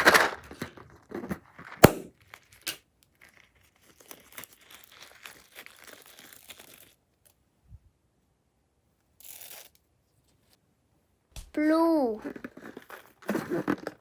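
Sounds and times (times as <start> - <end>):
sharp snap: 1.8 - 2.1.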